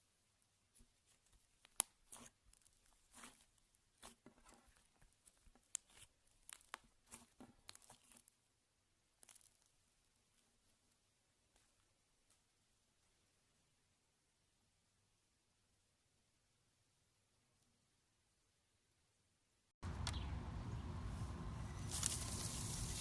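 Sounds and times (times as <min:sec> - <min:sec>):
slime squeezed crackling: 0:01.0 - 0:08.4, 0:09.1 - 0:09.8.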